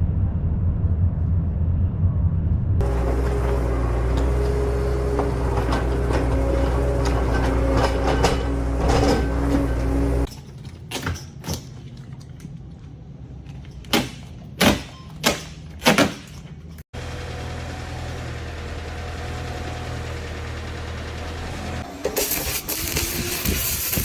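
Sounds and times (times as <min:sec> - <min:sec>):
low machine drone: 0:00.0 - 0:10.3, 0:17.0 - 0:22.0.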